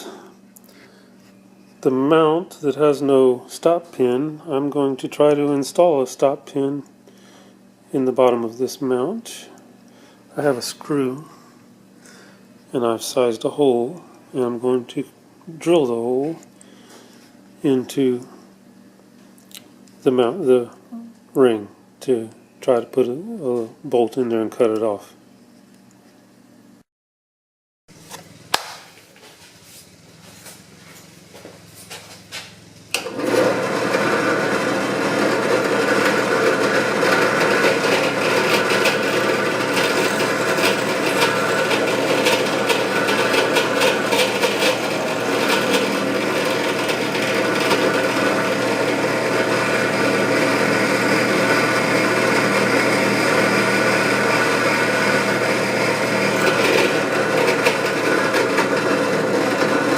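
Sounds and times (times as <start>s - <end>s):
power drill boring into metal: 33.0s - 59.9s.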